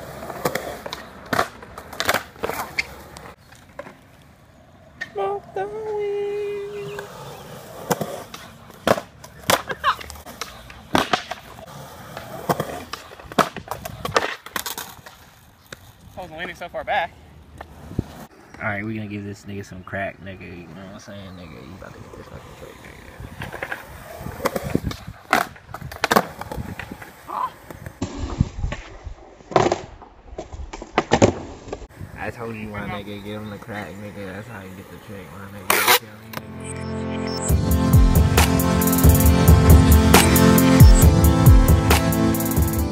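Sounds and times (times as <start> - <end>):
skateboard wheels rolling on concrete: 0.0 - 36.4, 38.2 - 42.9
skateboard clacking on concrete: 0.2 - 4.3, 6.8 - 16.7, 22.7 - 27.9.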